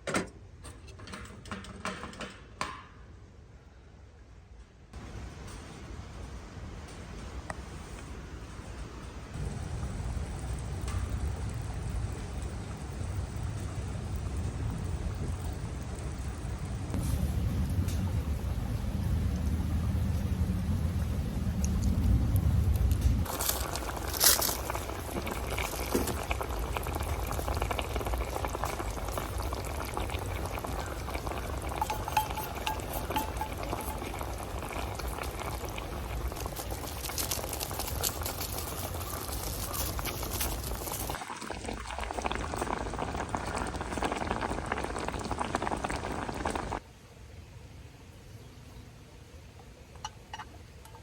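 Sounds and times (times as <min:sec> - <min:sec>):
liquid boiling in a pot: 0:09.3 - 0:46.8.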